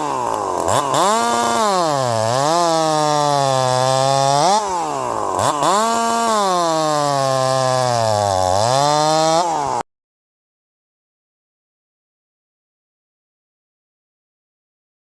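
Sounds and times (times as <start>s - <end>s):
chainsaw engine revving: 0.0s - 9.9s.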